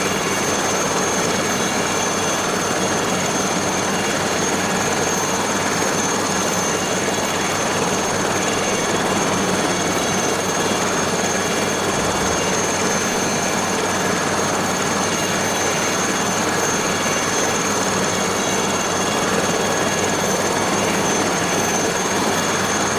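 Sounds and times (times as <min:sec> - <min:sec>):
helicopter rotor and turbine: 0:00.0 - 0:22.9
high whine: 0:08.2 - 0:13.9.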